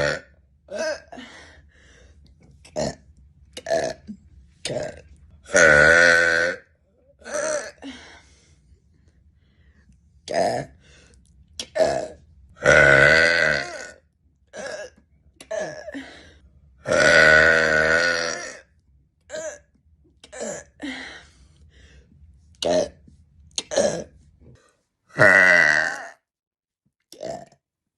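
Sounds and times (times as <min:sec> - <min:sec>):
woman burping: 0:00.0 - 0:01.2, 0:03.6 - 0:06.6, 0:07.2 - 0:08.0, 0:10.3 - 0:10.7, 0:11.6 - 0:16.1, 0:19.3 - 0:19.6, 0:20.2 - 0:21.0, 0:23.6 - 0:24.1, 0:25.2 - 0:26.2.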